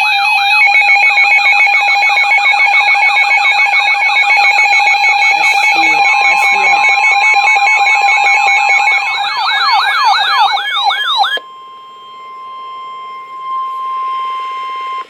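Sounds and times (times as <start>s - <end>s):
fast pulsing alarm: 0.0s - 15.0s
sirens sweeping up and down: 0.0s - 15.0s
steady alert tone: 5.2s - 9.3s.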